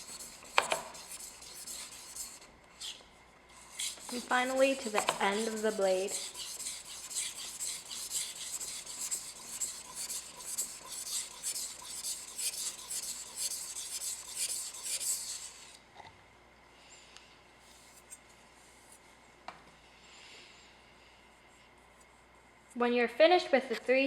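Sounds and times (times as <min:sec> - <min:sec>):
knife rasping on whetstone: 0:00.0 - 0:03.0, 0:03.6 - 0:15.6.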